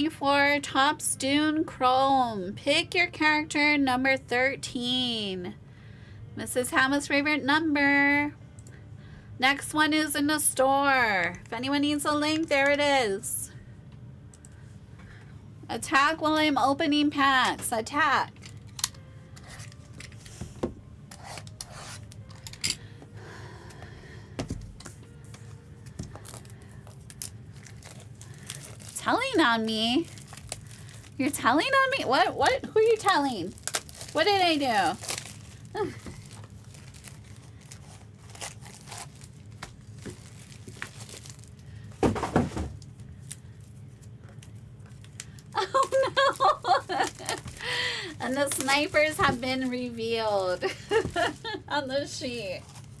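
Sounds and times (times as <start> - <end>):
card packs rubbing: 24.8 - 42.0, 45.6 - 51.6.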